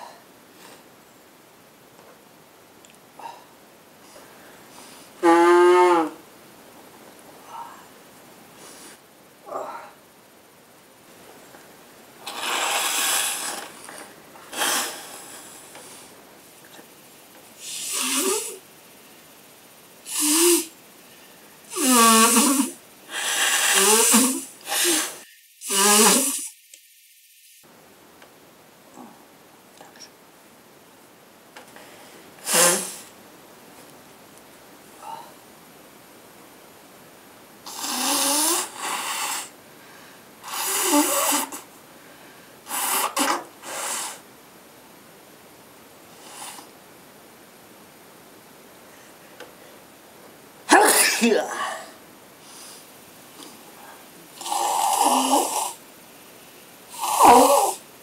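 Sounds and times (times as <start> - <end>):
person blowing nose: 12.2 - 13.9, 14.5 - 15.6, 17.6 - 18.6, 20.1 - 20.7, 21.7 - 26.5, 32.4 - 33.1, 37.7 - 39.5, 40.4 - 41.6, 42.7 - 44.2, 56.9 - 57.8
person sneezing: 14.5 - 15.2, 21.7 - 26.5, 32.4 - 33.0, 50.7 - 52.0, 57.0 - 57.8.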